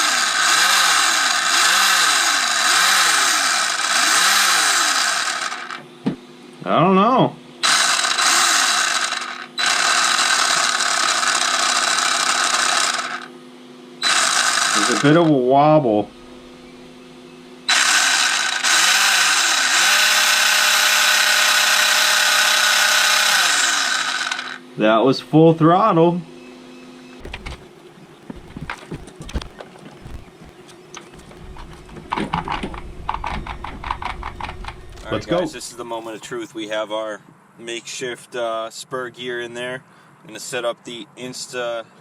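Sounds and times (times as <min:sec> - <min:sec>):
gritty whir of motor and gears: 0:00.0 - 0:05.8, 0:14.0 - 0:15.4, 0:17.7 - 0:24.6, 0:27.1 - 0:36.1
rc car motor spinning up: 0:00.0 - 0:05.8, 0:07.6 - 0:13.3, 0:14.0 - 0:15.3, 0:17.7 - 0:24.6.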